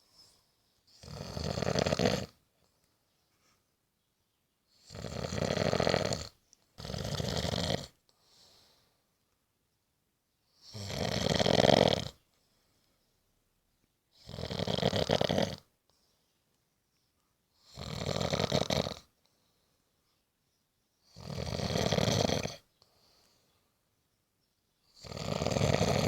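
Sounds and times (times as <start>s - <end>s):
person snoring: 1.0s - 2.4s, 4.8s - 8.0s, 10.6s - 12.2s, 14.2s - 15.7s, 17.6s - 19.1s, 21.1s - 22.7s, 25.0s - 26.0s.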